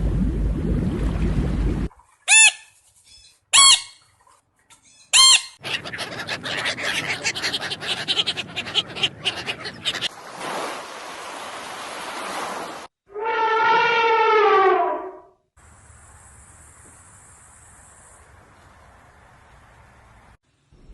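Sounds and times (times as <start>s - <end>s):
bird squawking: 2.3s - 4.0s, 4.8s - 10.1s
bird chattering calls: 4.9s - 10.1s.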